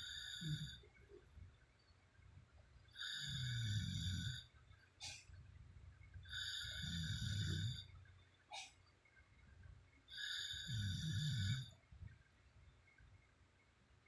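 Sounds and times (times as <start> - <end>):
woman snoring with whistling tone: 0.0 - 0.7, 3.0 - 4.4, 6.3 - 7.8, 10.2 - 11.6.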